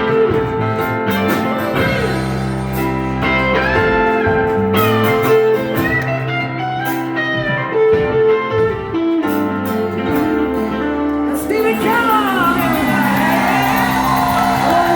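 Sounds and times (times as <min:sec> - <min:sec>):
lead guitar: 0:00.0 - 0:14.9
live rock band playing: 0:00.0 - 0:14.9.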